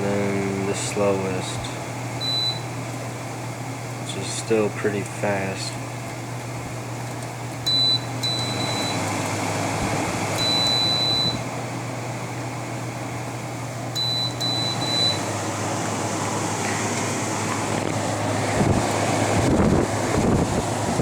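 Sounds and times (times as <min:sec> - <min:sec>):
air conditioner fan humming: 0:00.0 - 0:21.0
high electronic beeps: 0:10.4 - 0:11.4.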